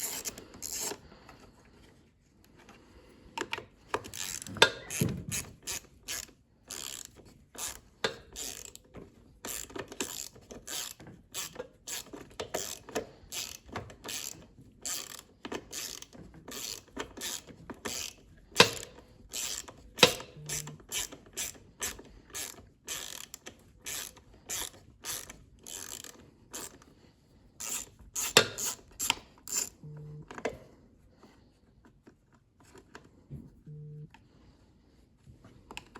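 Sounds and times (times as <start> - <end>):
ratchet wrench clicking: 0.0 - 1.0, 4.0 - 8.8, 9.4 - 26.8, 27.6 - 29.8.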